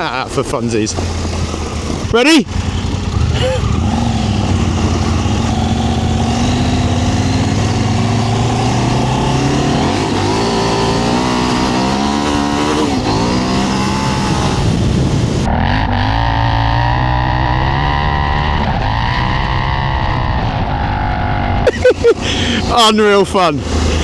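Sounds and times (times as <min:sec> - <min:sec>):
gear change: 0:00.0 - 0:15.5, 0:21.7 - 0:24.0
motorcycle engine revving: 0:00.0 - 0:24.0.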